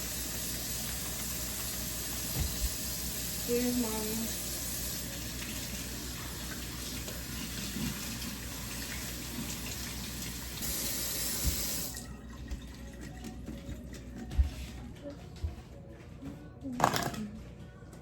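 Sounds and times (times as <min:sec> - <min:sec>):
faucet running into a sink: 0:00.0 - 0:14.0.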